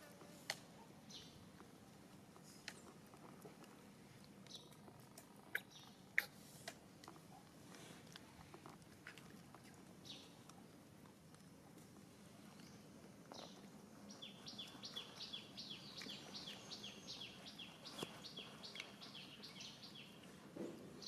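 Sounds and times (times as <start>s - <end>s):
bird chirping: 4.5s - 4.8s, 5.5s - 6.4s, 12.5s - 21.0s.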